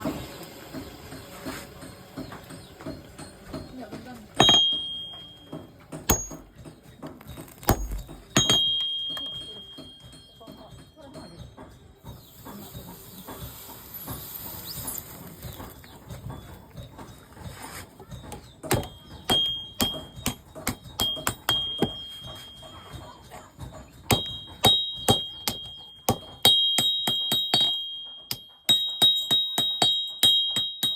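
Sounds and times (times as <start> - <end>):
hammer striking steel anvil: 4.4 - 6.7, 7.4 - 11.3, 18.6 - 23.5, 24.1 - 30.9.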